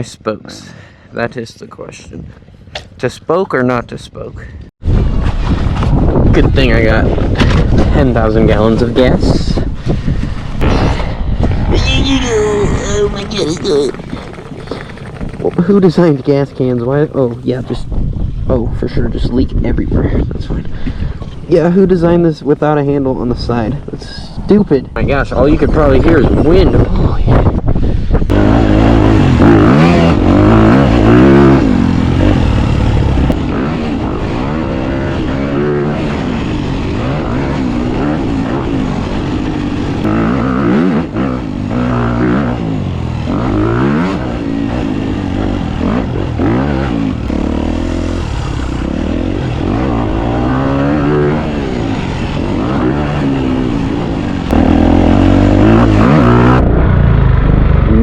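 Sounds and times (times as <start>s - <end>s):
dirt bike engine revving: 28.3s - 58.0s.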